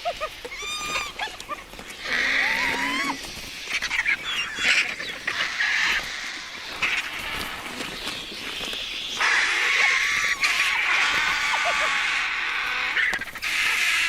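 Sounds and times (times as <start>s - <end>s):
rising and falling animal calls: 0.0s - 14.0s
harsh hissing screeches: 9.1s - 14.0s.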